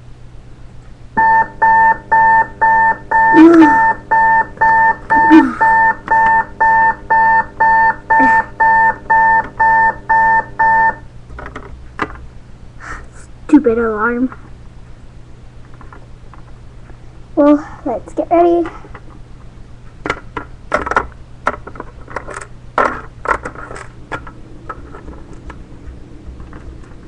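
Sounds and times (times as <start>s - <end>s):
alarm clock beeping: 1.2s - 11.0s
person making short sounds: 3.3s - 3.9s.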